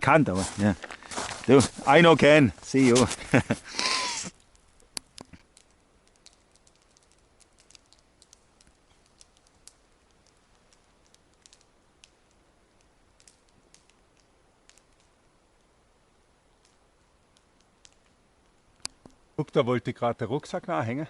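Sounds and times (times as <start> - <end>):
faint irregular clicks: 3.2 - 19.6.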